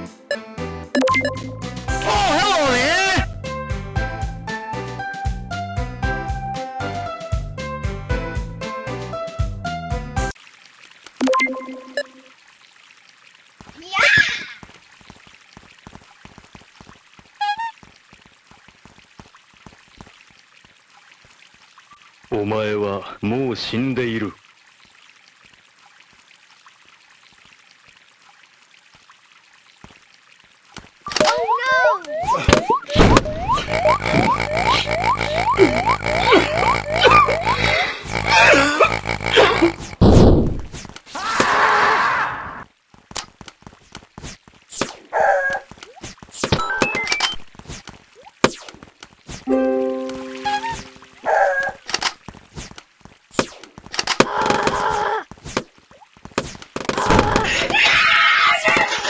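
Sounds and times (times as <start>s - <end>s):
faint trickling water: 10.3s - 39.8s, 45.2s - 53.3s
brief pitched sound effect: 49.5s - 51.2s.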